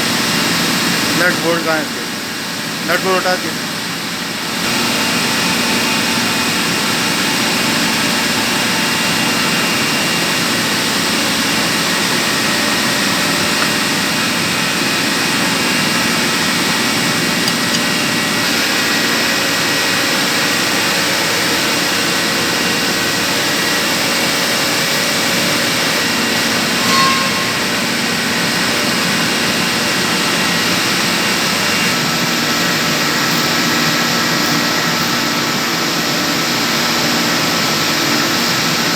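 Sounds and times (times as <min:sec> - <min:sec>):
machinery drone: 0:08.2 - 0:36.8
short high chirp: 0:26.8 - 0:28.3.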